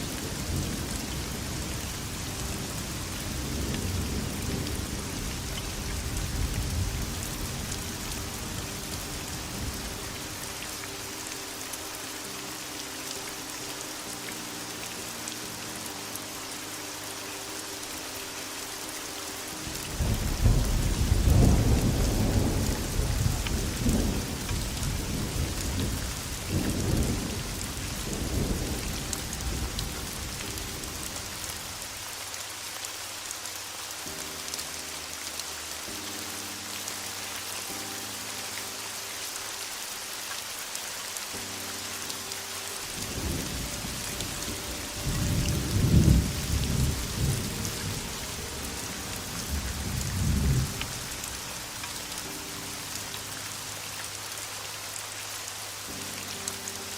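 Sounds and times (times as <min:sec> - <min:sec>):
heavy rain hissing: 0:00.0 - 0:56.9
thunder rumbling: 0:20.0 - 0:30.6, 0:43.1 - 0:51.3.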